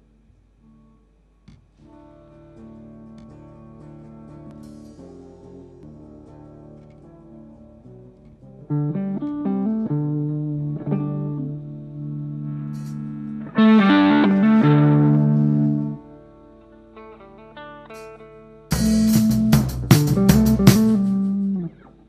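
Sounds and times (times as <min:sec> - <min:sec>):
electric guitar picked notes: 0:01.8 - 0:22.0
distorted electric guitar chord: 0:08.9 - 0:17.8, 0:18.7 - 0:22.0.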